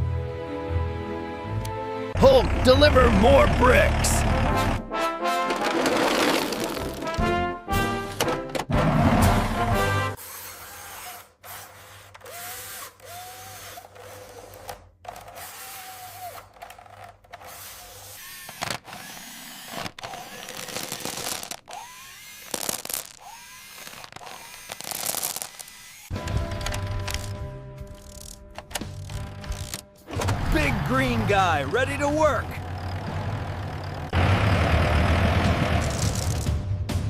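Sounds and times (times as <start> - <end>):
small motor whirring: 10.2 - 29.8, 35.8 - 36.5.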